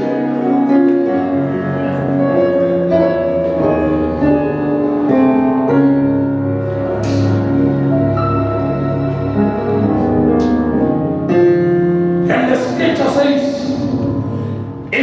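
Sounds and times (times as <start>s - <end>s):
slow keyboard chords: 0.0s - 15.0s.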